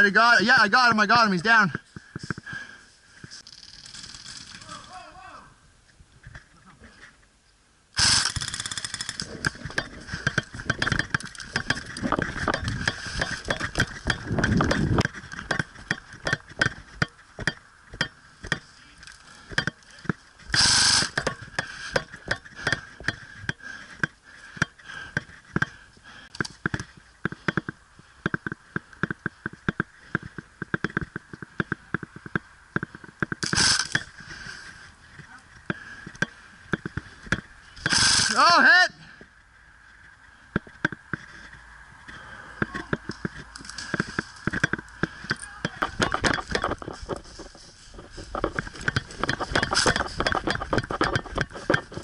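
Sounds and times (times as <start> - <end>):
loud bursts of noise: 8.0 - 9.2, 20.5 - 21.2.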